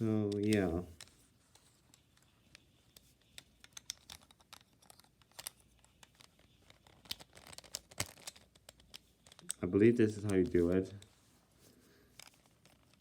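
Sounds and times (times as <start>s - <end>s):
plastic puzzle cube clicks: 2.5s - 9.6s.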